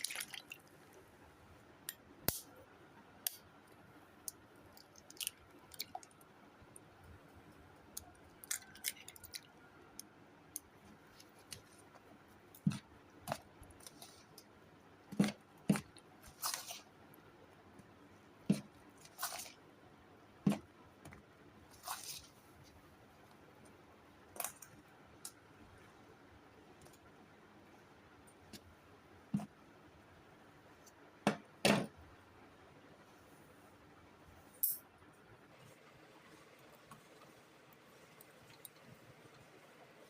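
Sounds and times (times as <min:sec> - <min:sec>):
rustling or scraping: 0:21.7 - 0:22.8.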